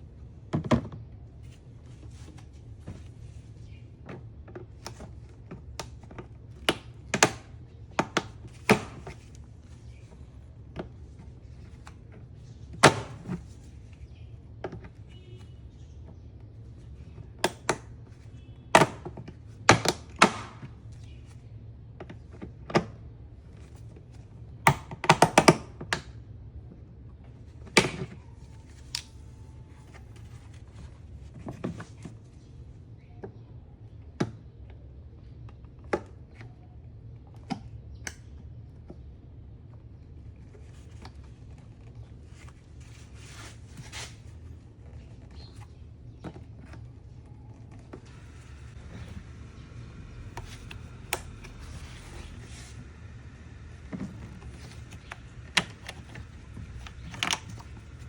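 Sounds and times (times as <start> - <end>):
steady low hum: 26.2 - 58.0.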